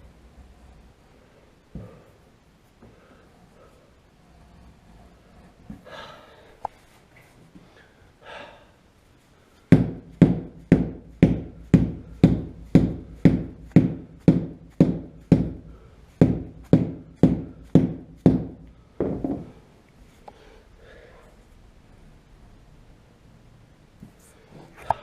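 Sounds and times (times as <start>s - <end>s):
solid thumps on window glass: 9.7s - 19.5s.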